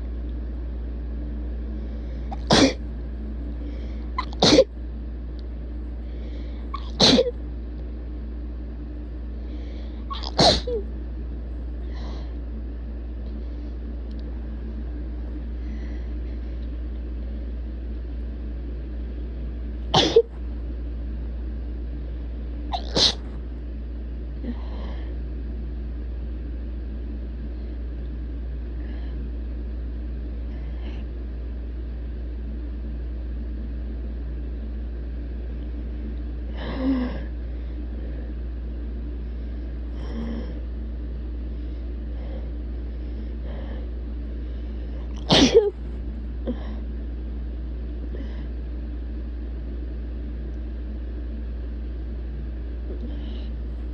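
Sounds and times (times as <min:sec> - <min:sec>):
steady low hum: 0:00.0 - 0:53.9
person sneezing: 0:02.3 - 0:02.8, 0:04.2 - 0:04.7, 0:06.8 - 0:07.3, 0:10.1 - 0:10.8, 0:20.0 - 0:20.3, 0:22.8 - 0:23.4, 0:45.2 - 0:45.8.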